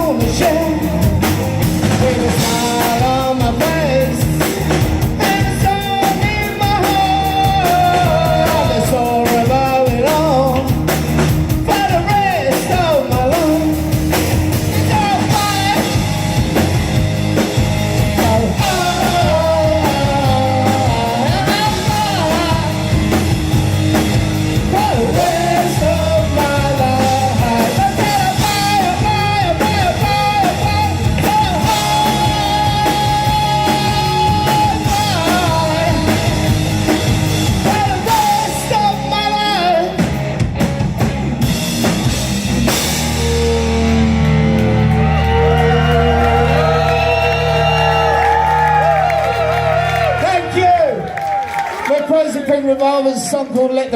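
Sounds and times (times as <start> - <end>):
melodic lead guitar line: 0.0 - 51.8
instrumental rock band: 0.0 - 51.9.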